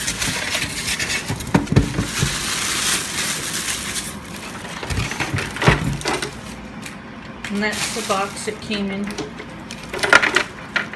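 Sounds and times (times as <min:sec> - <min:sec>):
packaging rustling and crinkling: 0:00.0 - 0:06.7, 0:07.5 - 0:08.7.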